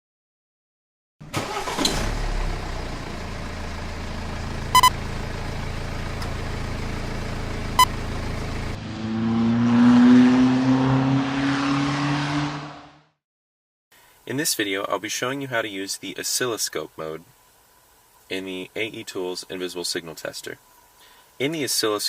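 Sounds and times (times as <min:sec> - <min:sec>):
car engine running and revving: 0:01.2 - 0:13.1
short beeps: 0:04.7 - 0:05.0, 0:07.8 - 0:08.0.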